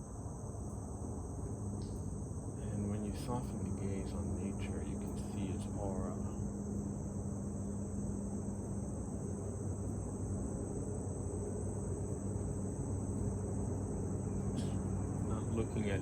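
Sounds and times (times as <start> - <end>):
insects chirping: 0.0 - 16.0
highway traffic noise: 10.5 - 16.0.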